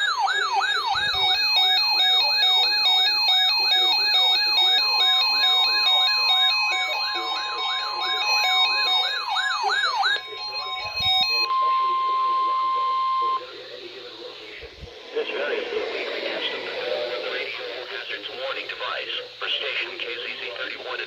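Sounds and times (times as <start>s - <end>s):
siren-like sweeping tone: 0.0s - 13.2s, 14.9s - 17.8s
alternating beeps: 0.0s - 14.1s
steady warning alarm tone: 0.0s - 18.6s.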